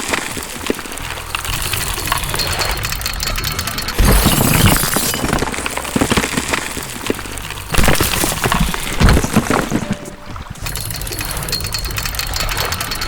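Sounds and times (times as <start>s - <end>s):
crashing and smashing: 0.0s - 13.0s.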